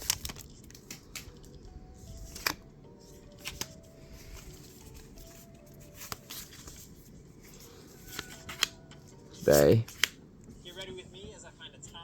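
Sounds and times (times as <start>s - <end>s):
paper cards rustling: 0.0s - 11.0s
light card clicks: 9.8s - 10.2s.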